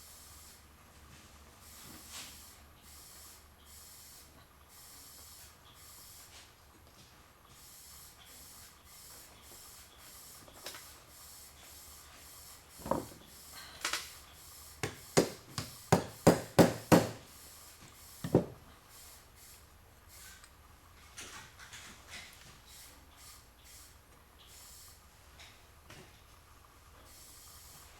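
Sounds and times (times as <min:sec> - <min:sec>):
sharp knocks: 0:14.8 - 0:17.2.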